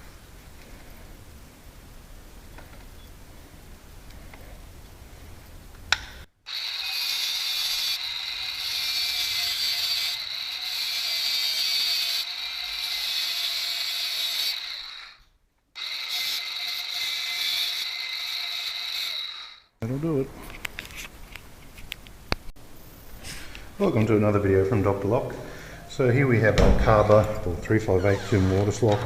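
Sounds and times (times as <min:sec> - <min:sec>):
small power tool on metal: 0:06.5 - 0:15.2, 0:15.8 - 0:19.7.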